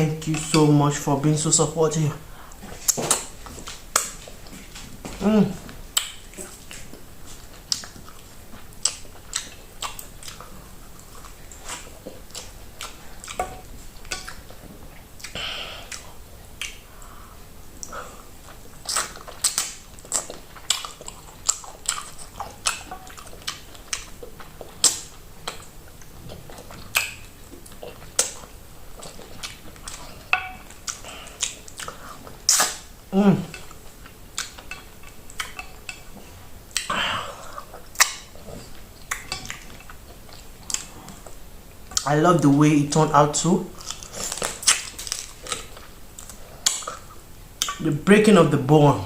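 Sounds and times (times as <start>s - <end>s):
person chewing wetly: 5.9s - 42.1s, 43.7s - 47.8s
crisp bites: 43.8s - 46.9s.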